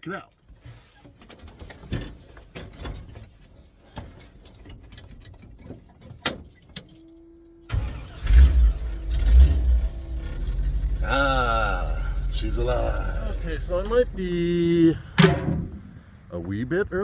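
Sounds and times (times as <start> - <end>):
truck engine starting and idling: 4.3 - 17.0.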